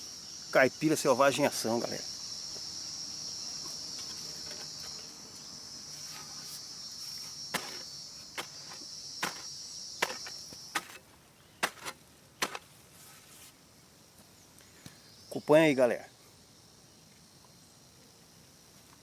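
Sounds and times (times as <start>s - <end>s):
high-pitched insect chorus: 0.0s - 11.1s, 13.7s - 19.0s.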